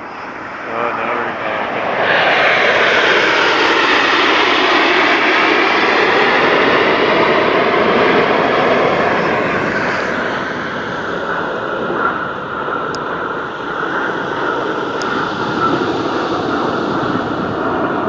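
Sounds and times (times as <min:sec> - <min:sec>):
jets flying past: 0:00.0 - 0:18.0.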